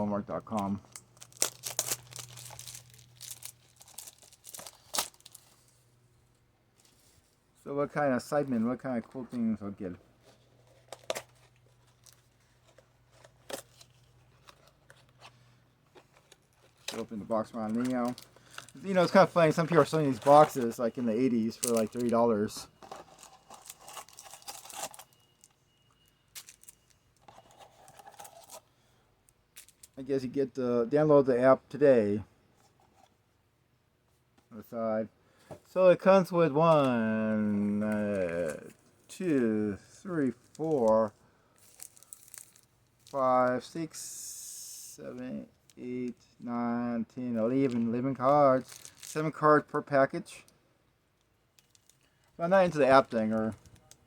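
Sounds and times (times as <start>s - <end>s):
wrapping snapping: 0.9s - 5.4s, 41.6s - 43.2s
wrapping tearing and crinkling: 0.9s - 5.8s, 15.9s - 25.6s, 26.4s - 28.6s, 40.4s - 43.2s, 48.6s - 49.2s, 51.6s - 52.3s
cardboard tearing and crinkling: 1.2s - 5.4s, 22.8s - 25.1s
rustling: 40.0s - 43.2s.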